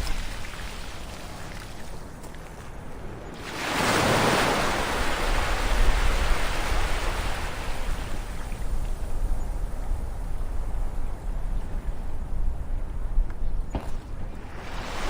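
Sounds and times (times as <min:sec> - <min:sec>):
ocean waves breaking on shore: 0:00.0 - 0:09.0, 0:14.0 - 0:15.0.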